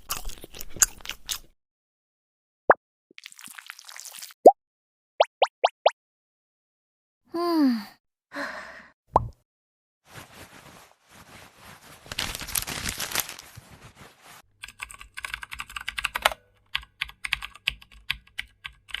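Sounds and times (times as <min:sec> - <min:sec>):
rapid irregular clicks: 0:14.6 - 0:19.0.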